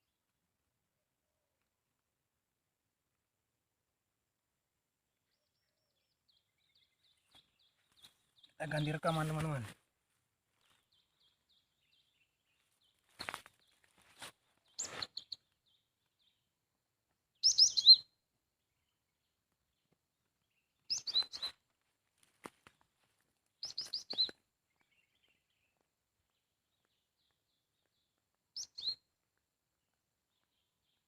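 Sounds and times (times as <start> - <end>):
recorded bird chirps: 5.1 - 9.8, 10.6 - 16.6, 17.2 - 21.6, 23.6 - 29.3, 29.9 - 31.0.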